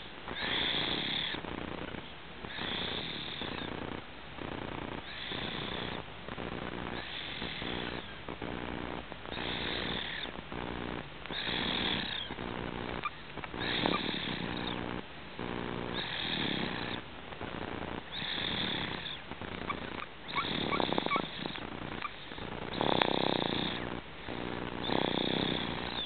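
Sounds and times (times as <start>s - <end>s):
person snoring: 0.3s - 1.4s, 5.1s - 6.0s, 9.3s - 10.3s, 11.3s - 12.3s, 13.6s - 14.8s, 15.9s - 17.0s, 18.1s - 19.2s, 20.4s - 21.6s, 22.7s - 26.0s.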